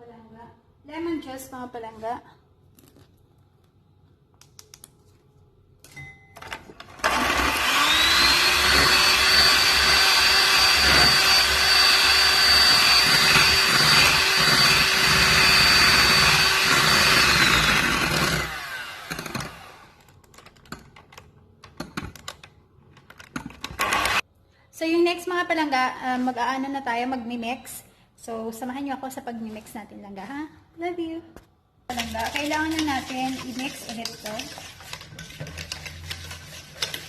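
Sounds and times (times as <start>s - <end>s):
electric mixer whining: 6.9s - 19.9s, 23.8s - 24.2s.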